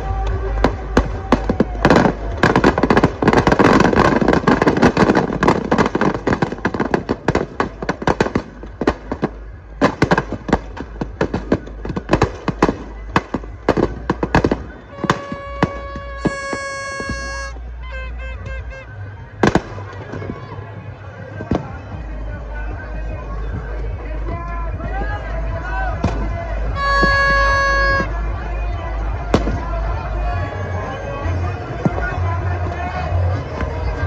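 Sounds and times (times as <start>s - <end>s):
firecrackers popping: 0.0s - 17.7s, 19.4s - 22.0s, 23.6s - 28.2s, 29.2s - 30.1s
held horn-like tone: 14.8s - 19.3s, 26.7s - 28.3s.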